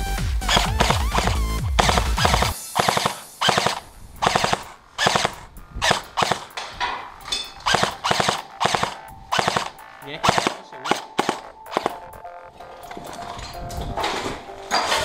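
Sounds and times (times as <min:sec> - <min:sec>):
electronic music: 0:00.0 - 0:06.4, 0:07.1 - 0:15.0
automatic gunfire bursts: 0:00.4 - 0:06.5, 0:07.6 - 0:12.0.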